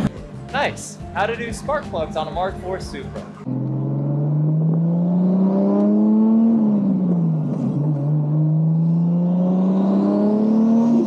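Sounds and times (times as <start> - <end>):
car engine accelerating hard: 3.4 - 11.0.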